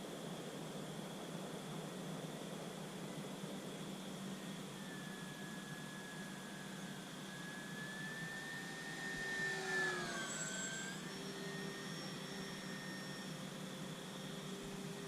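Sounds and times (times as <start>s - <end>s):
model airplane motor whining: 4.2s - 15.0s.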